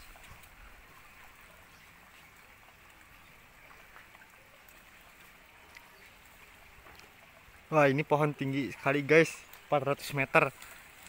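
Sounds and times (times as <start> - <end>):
faint outdoor hiss: 0.0 - 11.0
light ticks: 5.7 - 6.0.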